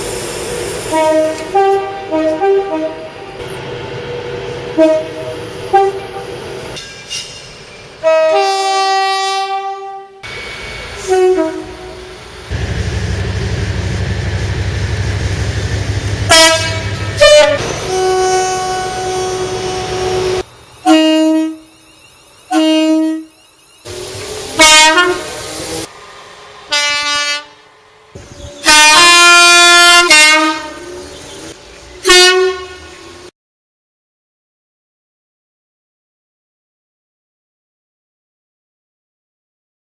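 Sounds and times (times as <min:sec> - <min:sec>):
locomotive engine rumbling: 0:00.0 - 0:09.2, 0:10.2 - 0:33.3
train horn blasts: 0:00.9 - 0:03.5, 0:04.7 - 0:06.4, 0:08.0 - 0:10.3, 0:11.0 - 0:12.8, 0:16.2 - 0:21.8, 0:22.5 - 0:23.4, 0:24.5 - 0:25.4, 0:26.7 - 0:27.7, 0:28.5 - 0:31.3, 0:32.0 - 0:33.3.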